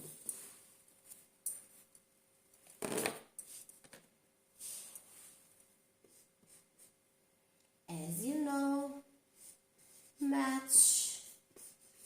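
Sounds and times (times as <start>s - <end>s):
faint rustling and handling: 0.0s - 7.0s.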